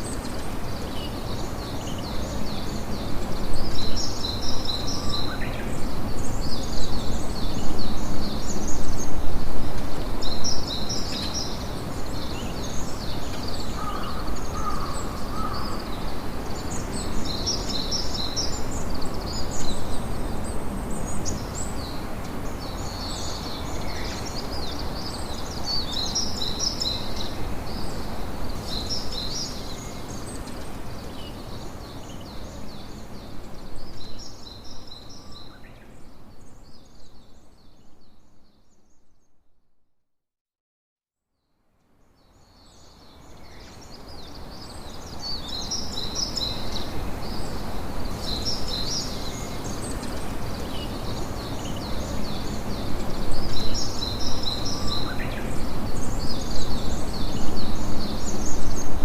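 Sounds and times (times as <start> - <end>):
small birds chirping: 42.2 - 59.0.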